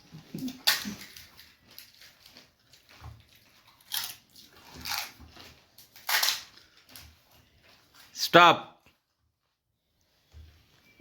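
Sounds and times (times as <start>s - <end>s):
crisp shells being chewed: 0.0s - 8.2s.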